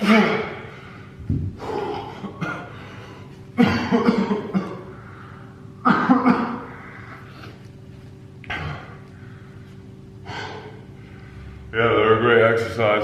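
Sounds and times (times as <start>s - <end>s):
man coughing and gasping: 1.9s - 2.8s, 3.5s - 5.0s, 5.8s - 6.7s.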